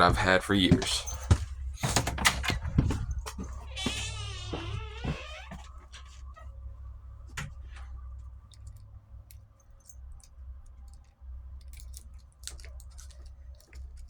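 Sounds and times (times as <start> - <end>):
steady low hum: 0.0 - 14.0
keys clicking in a lock: 7.4 - 14.0.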